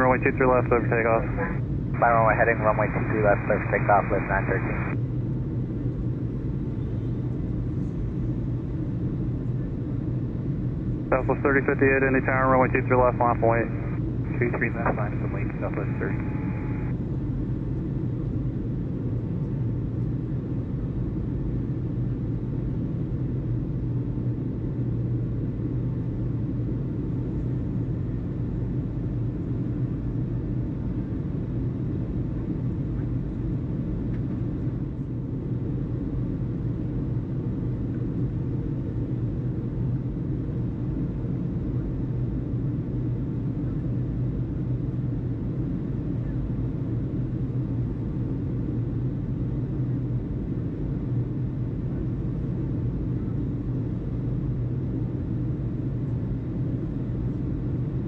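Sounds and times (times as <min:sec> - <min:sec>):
jet engines rumbling: 0:00.0 - 0:05.0, 0:11.0 - 0:17.0.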